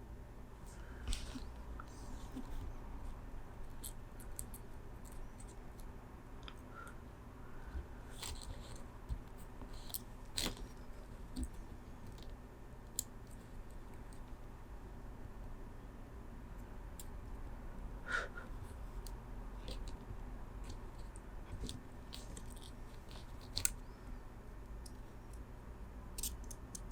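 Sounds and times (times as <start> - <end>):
low steady hum: 0.0 - 26.9
small handling noises: 0.6 - 6.7, 7.6 - 14.5, 18.5 - 25.5
wire cutters clicking and snipping: 20.7 - 23.8, 26.2 - 26.9.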